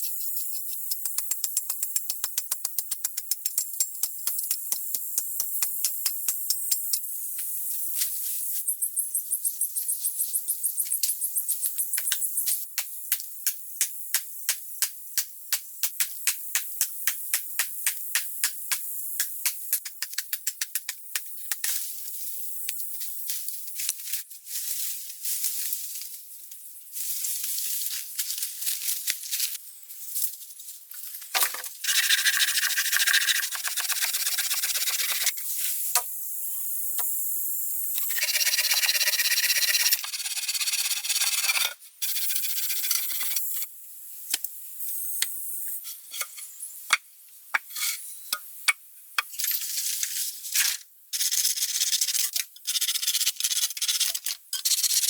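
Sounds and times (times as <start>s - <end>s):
rough scraping and rubbing: 31.4s - 35.3s.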